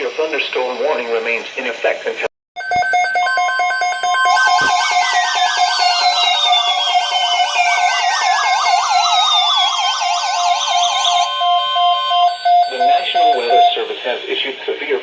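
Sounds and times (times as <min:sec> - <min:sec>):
warbling siren-like alert: 0:02.6 - 0:13.8
rapidly pulsing beep: 0:02.6 - 0:13.9
steady alert tone: 0:02.6 - 0:13.9.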